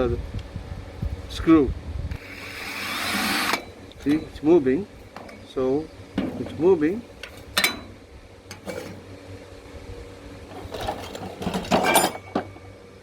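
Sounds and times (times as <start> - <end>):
faint mechanical hum: 0.0 - 13.0
metal rattling and scraping: 6.2 - 9.1, 10.5 - 12.5.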